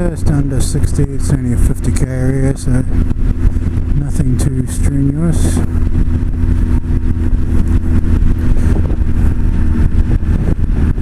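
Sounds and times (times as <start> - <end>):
motorcycle engine cruising: 0.0 - 11.0
wind buffeting microphone: 0.0 - 11.0.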